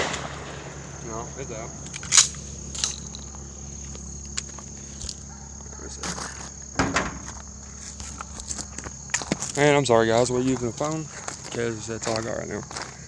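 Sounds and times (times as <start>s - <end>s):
high-pitched insect drone: 0.0s - 13.0s
footsteps: 1.8s - 13.0s
small knocks: 6.7s - 7.5s.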